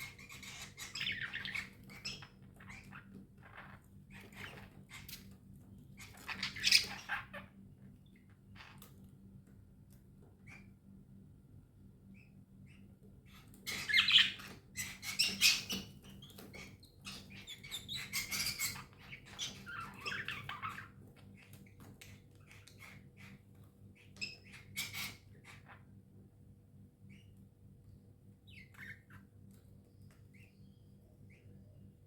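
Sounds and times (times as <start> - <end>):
budgerigars chattering and squawking: 0.0 - 5.3, 6.0 - 7.5, 12.2 - 23.4, 24.0 - 25.8, 28.5 - 29.3.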